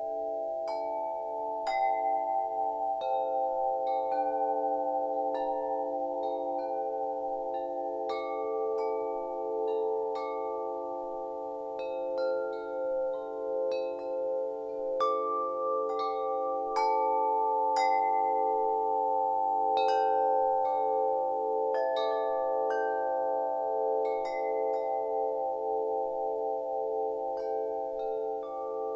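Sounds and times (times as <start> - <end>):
wind chimes ringing: 0.0 - 28.9.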